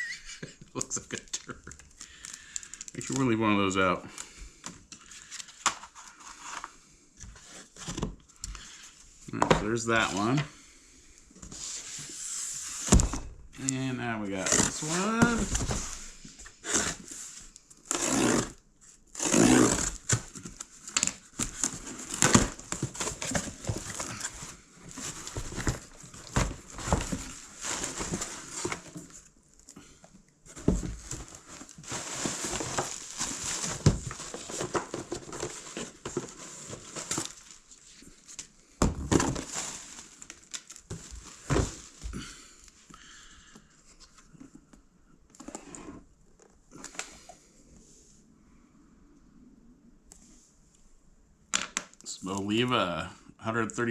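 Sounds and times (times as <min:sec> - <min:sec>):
wrapping crinkling and tearing: 0:00.8 - 0:03.4, 0:14.3 - 0:16.0.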